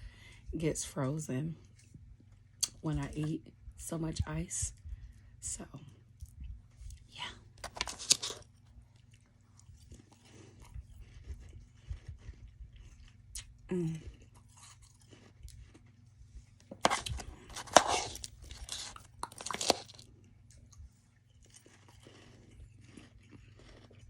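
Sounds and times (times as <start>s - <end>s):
crunching and chewing frost: 1.0s - 3.5s, 4.7s - 24.0s
small crackles: 6.2s - 16.0s, 16.6s - 24.0s.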